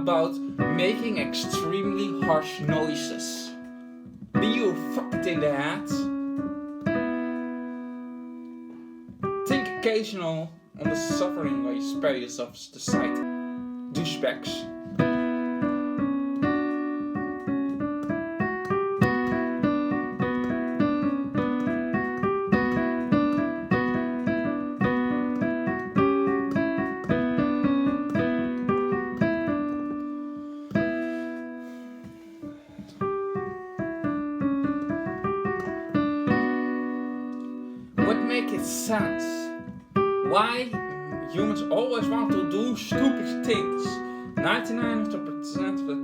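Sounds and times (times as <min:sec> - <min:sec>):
piano music: 0:00.0 - 0:46.0.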